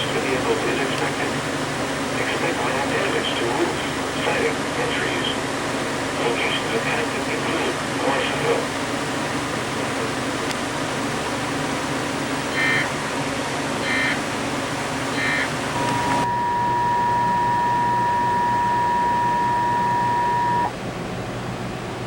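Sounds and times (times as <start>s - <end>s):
steady attention tone: 12.5s - 13.0s, 13.8s - 14.2s, 15.1s - 20.8s
short data bursts: 15.1s - 20.7s.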